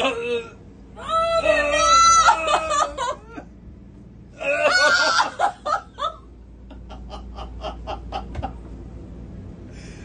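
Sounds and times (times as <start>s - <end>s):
person laughing: 2.2s - 3.5s.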